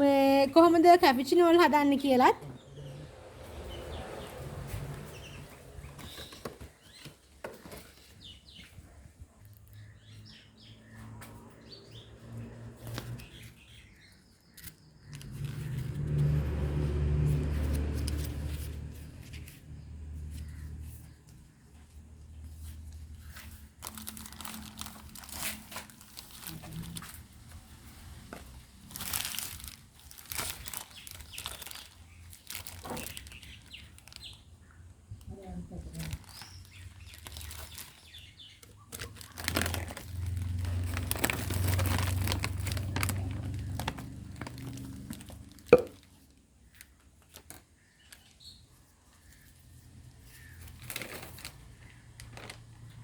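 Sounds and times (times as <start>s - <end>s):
small birds chirping: 0.3s - 16.2s, 19.0s - 24.6s, 28.7s - 40.4s, 46.6s - 52.9s
packaging crinkling: 23.2s - 27.6s, 28.5s - 34.4s, 35.9s - 48.3s, 50.4s - 53.0s.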